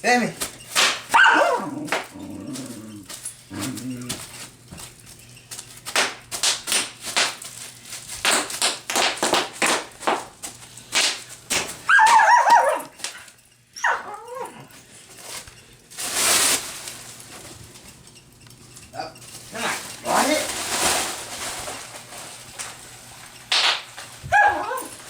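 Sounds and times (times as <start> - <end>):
bubble wrap crackling and popping: 0.3 - 13.4, 15.2 - 18.0, 18.9 - 25.0
dog whining: 1.1 - 4.3, 11.8 - 14.8, 24.2 - 25.0
dog whimpering: 1.2 - 4.2, 13.8 - 14.7, 24.3 - 25.0.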